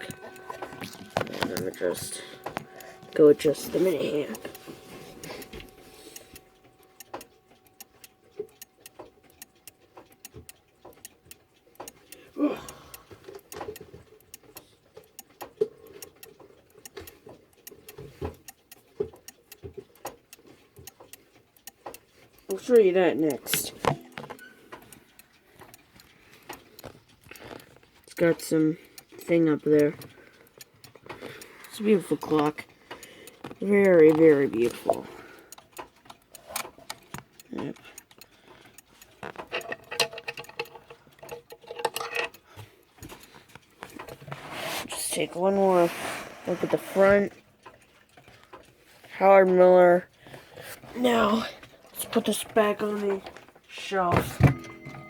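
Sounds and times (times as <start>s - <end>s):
faint ringing tone: 0.0s - 7.1s, 54.3s - 55.0s
irregular clicks and knocks: 0.0s - 12.2s, 13.0s - 45.6s, 51.6s - 55.0s
clock ticking: 0.0s - 55.0s.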